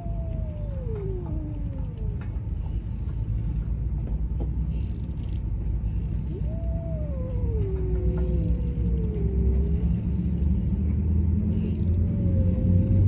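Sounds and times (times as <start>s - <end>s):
cat yowling: 0.0s - 2.2s, 6.3s - 10.1s
low rumble: 0.0s - 13.0s.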